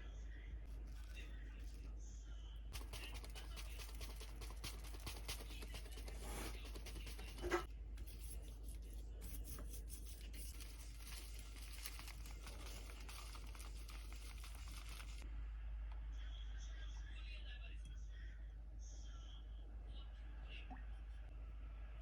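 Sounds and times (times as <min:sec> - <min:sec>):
plastic packaging crinkling: 0:10.3 - 0:15.2.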